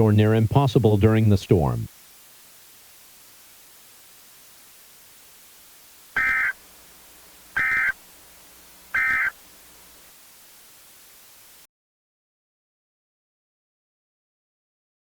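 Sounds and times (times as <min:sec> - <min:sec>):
static hiss: 0:00.0 - 0:11.7
digital data tone bursts: 0:06.2 - 0:06.6, 0:07.6 - 0:08.0, 0:08.9 - 0:09.4.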